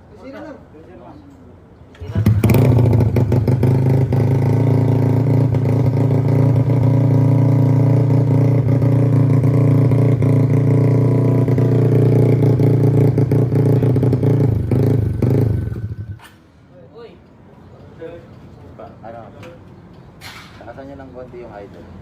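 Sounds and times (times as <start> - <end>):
loud motorcycle engine running: 2.0 - 16.2.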